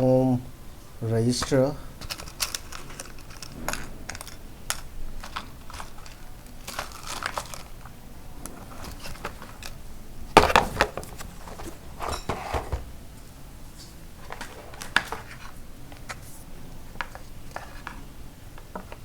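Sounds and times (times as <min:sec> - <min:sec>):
packaging rustling and crinkling: 0:01.4 - 0:09.8, 0:10.4 - 0:12.9, 0:14.2 - 0:16.4.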